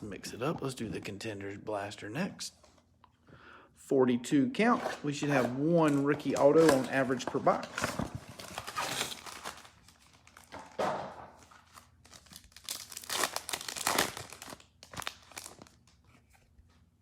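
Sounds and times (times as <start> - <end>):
plastic wrapping crinkling and tearing: 5.8 - 16.1.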